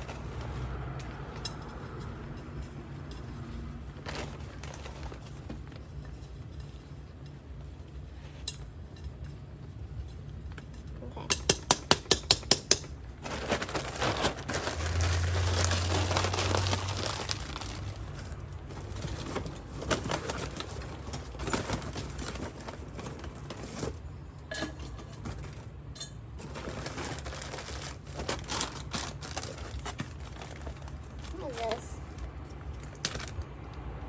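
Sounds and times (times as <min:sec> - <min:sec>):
soil rustling and crackling: 0:13.1 - 0:33.6.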